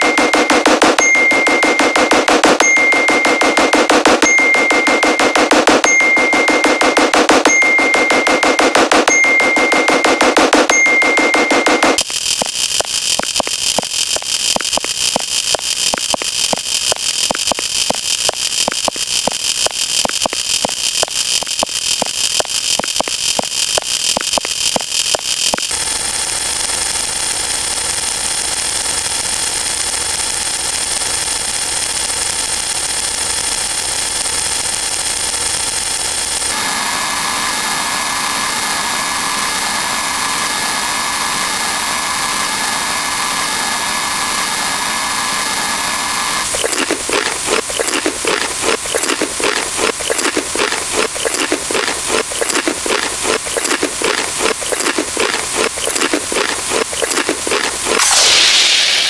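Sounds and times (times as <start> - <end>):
rapid clicking rattle: 0.0 - 36.6
machine hum with high whine: 0.0 - 59.0.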